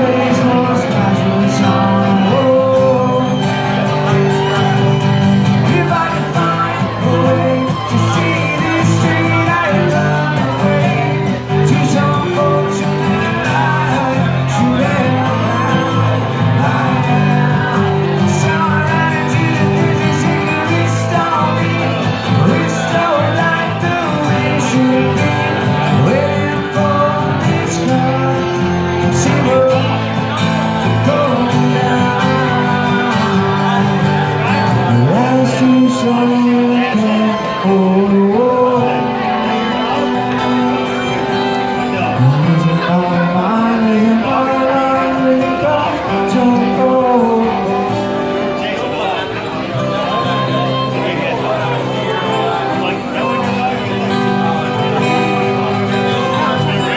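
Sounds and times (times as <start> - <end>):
guitar: 0.0 - 56.9
person singing: 0.0 - 56.9.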